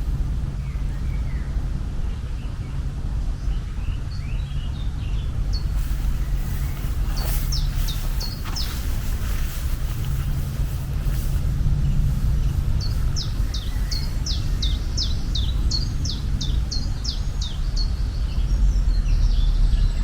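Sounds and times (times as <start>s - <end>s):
birds chirping: 0.0s - 20.0s
low ambient rumble: 0.0s - 20.0s.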